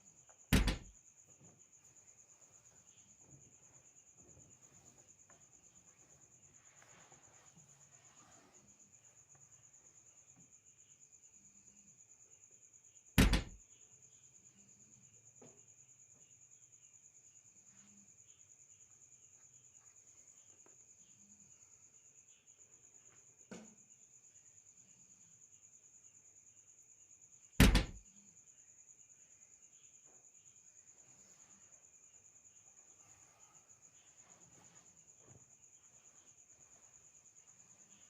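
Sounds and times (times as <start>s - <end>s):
loud sharp knocks: 0.5s - 0.9s, 13.2s - 13.6s, 27.6s - 28.0s.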